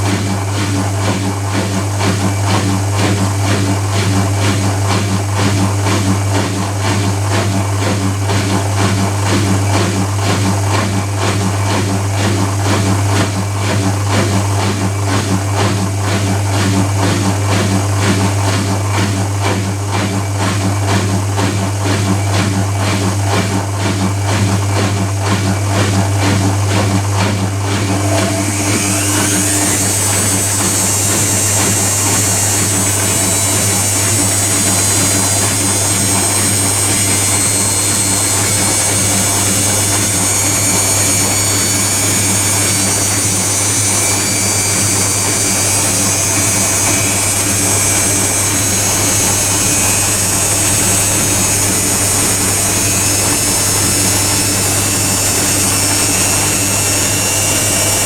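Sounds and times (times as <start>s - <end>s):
rhythmic pulsing: 0.0s - 58.0s
washing machine and dryer hum: 0.0s - 58.0s
motor whine: 20.7s - 58.0s.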